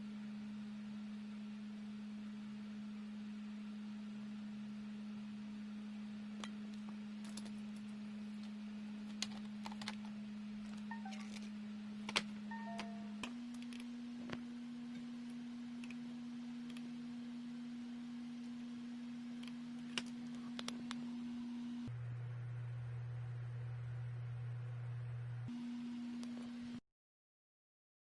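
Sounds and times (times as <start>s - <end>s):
laptop humming: 8.3s - 26.8s.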